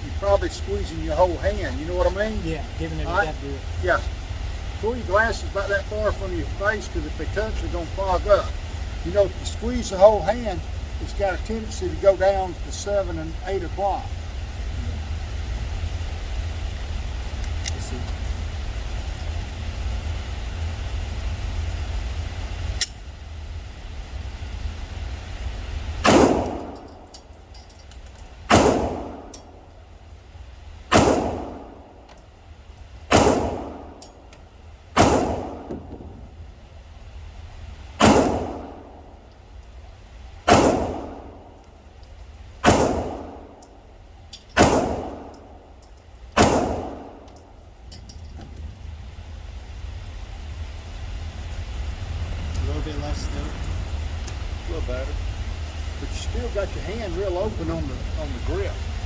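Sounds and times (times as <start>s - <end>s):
pistol shots with ringing echo: 26.0s - 27.0s, 28.5s - 29.5s, 30.9s - 31.8s, 33.1s - 34.1s, 35.0s - 35.9s, 38.0s - 39.1s, 40.5s - 41.5s, 42.6s - 43.7s, 44.6s - 45.6s, 46.4s - 47.3s.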